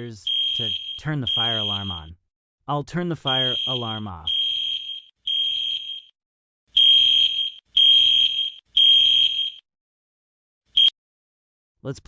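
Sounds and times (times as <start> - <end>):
fire alarm beeping: 0.0 - 2.1, 3.3 - 6.1, 6.8 - 9.6.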